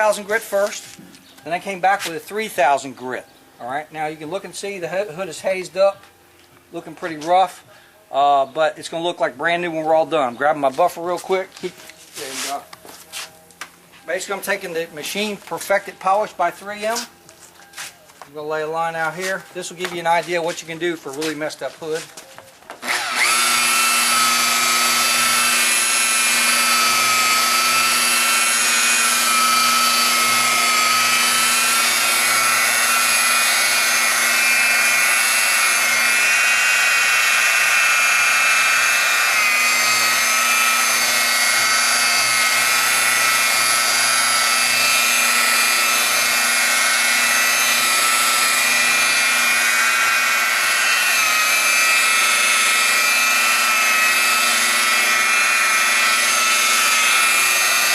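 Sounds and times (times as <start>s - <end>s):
electric polisher whining: 17.8s - 57.9s.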